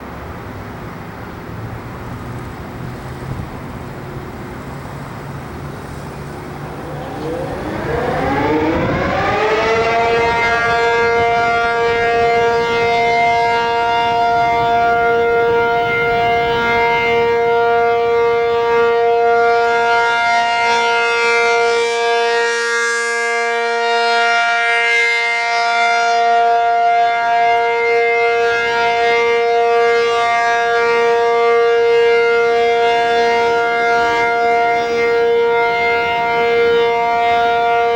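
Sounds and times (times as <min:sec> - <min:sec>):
faint city traffic: 0:00.0 - 0:37.9
tornado siren winding up: 0:06.4 - 0:20.9.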